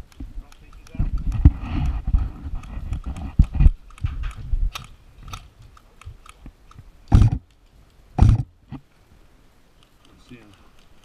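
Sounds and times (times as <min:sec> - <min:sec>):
crunches and sharp clicks: 0:00.0 - 0:08.9, 0:09.7 - 0:11.0
loud thump: 0:07.1 - 0:07.4, 0:08.2 - 0:08.5.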